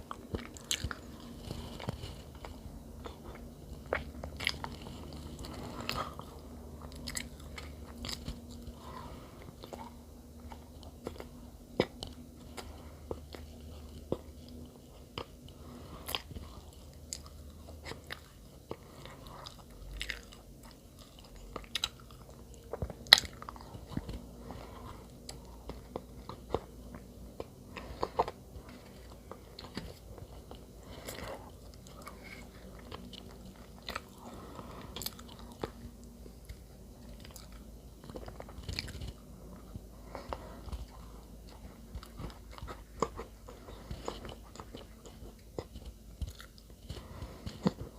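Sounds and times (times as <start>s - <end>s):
person chewing bread: 0.0s - 47.9s.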